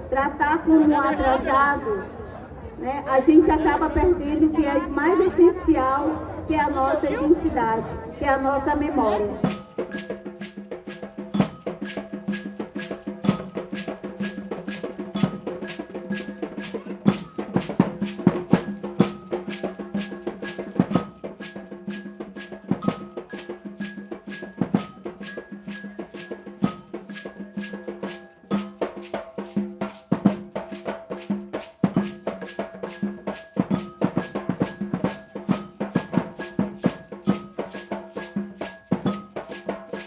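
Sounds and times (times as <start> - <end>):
drums beating fast: 7.4 - 40.0.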